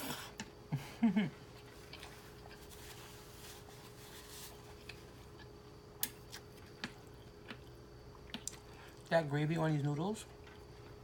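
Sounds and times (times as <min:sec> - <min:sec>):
faint steady hum: 0:00.0 - 0:11.0
wet chewing of noodles: 0:01.3 - 0:09.1, 0:10.2 - 0:11.0.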